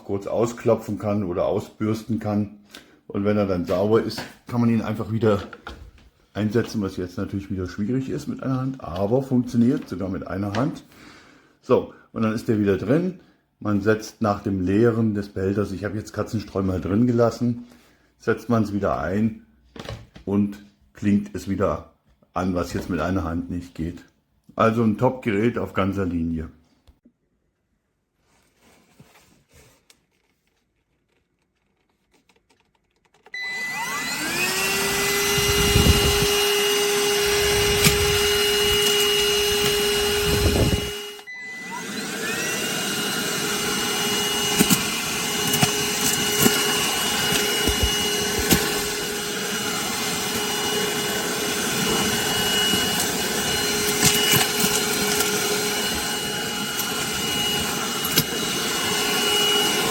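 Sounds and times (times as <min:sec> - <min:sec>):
handheld vacuum cleaner whine: 0:33.2 - 0:59.9.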